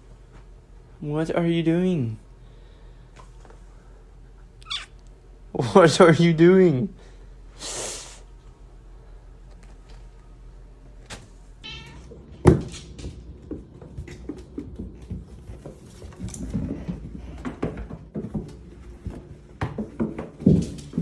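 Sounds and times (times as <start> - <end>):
cat meowing: 4.6 - 5.0, 11.6 - 12.1.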